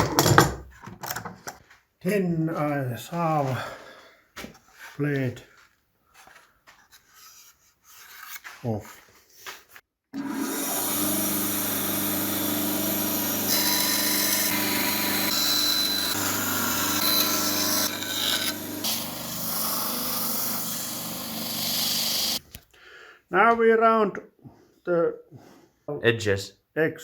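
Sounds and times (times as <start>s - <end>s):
power tool rasping wood: 10.2s - 22.4s.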